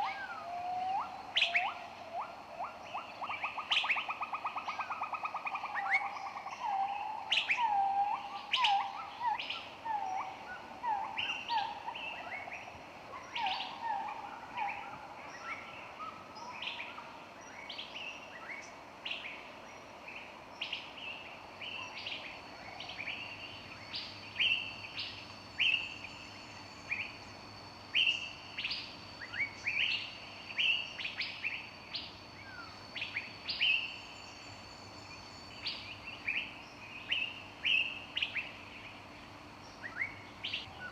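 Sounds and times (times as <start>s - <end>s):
songbirds chirping: 0.0s - 40.9s.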